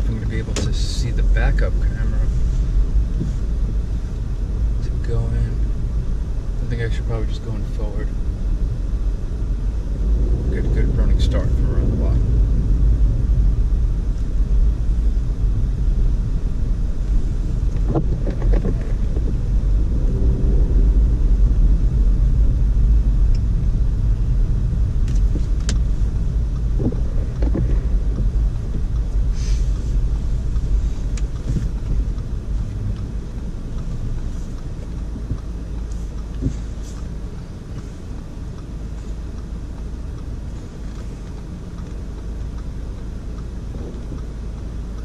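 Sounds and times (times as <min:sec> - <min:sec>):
car driving on snow: 0:00.0 - 0:45.0
faint clicks and knocks: 0:17.7 - 0:19.4, 0:25.0 - 0:45.0.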